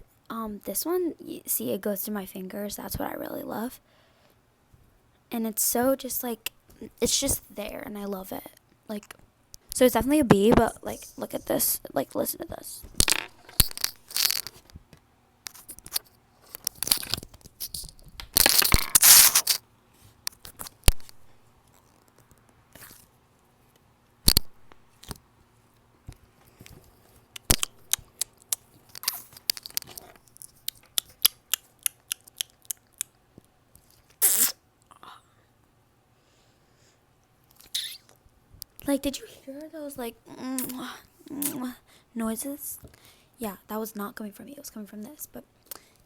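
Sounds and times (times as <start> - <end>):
squishy toy crunching and crackling: 15.5 - 19.6, 27.3 - 33.1.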